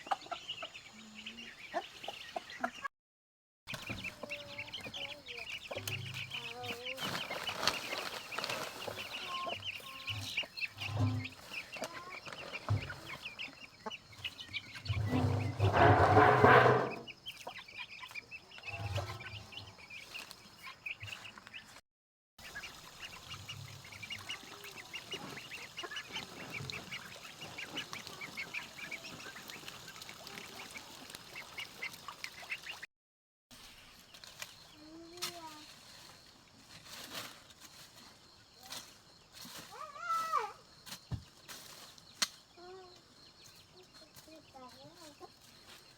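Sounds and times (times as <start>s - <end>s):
poultry calling: 3.8s - 21.7s, 22.4s - 32.8s.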